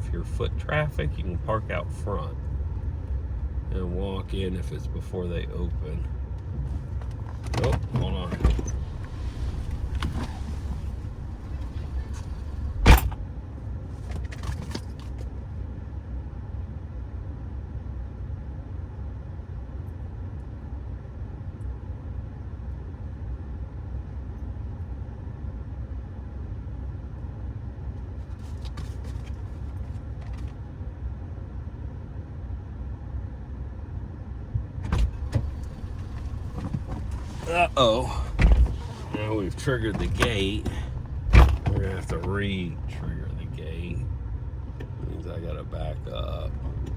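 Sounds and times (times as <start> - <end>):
car engine and road drone: 0.0 - 46.9
faint rustles: 28.0 - 30.6, 35.0 - 43.0.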